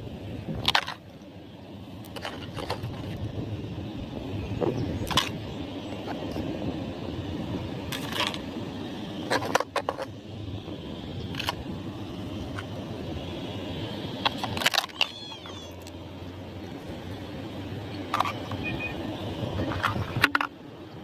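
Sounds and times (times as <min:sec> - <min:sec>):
plastic toy cars clattering: 0:00.6 - 0:01.1, 0:02.0 - 0:03.2, 0:05.0 - 0:05.4, 0:07.9 - 0:08.5, 0:09.3 - 0:10.1, 0:11.3 - 0:11.6, 0:14.2 - 0:15.9, 0:18.1 - 0:18.6, 0:19.6 - 0:20.6.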